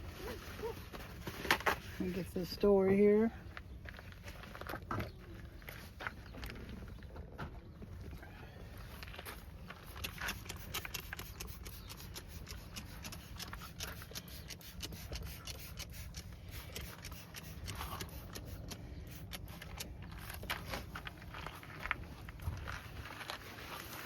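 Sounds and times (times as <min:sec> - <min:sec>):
steady low rumble: 0:06.3 - 0:23.3.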